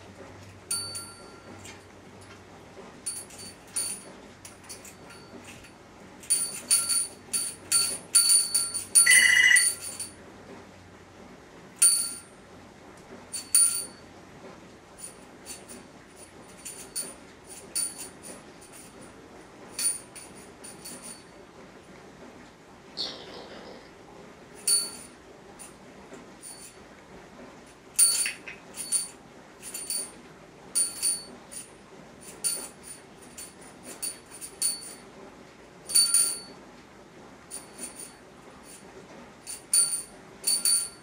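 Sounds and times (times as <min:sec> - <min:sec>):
small metal bell jangling: 0:00.7 - 0:02.4, 0:03.0 - 0:10.2, 0:11.8 - 0:12.3, 0:13.4 - 0:14.0, 0:15.0 - 0:19.1, 0:19.8 - 0:21.3, 0:24.6 - 0:25.2, 0:26.4 - 0:26.8, 0:28.0 - 0:30.2, 0:30.8 - 0:35.0, 0:35.9 - 0:36.5, 0:37.5 - 0:38.8, 0:39.4 - 0:41.0.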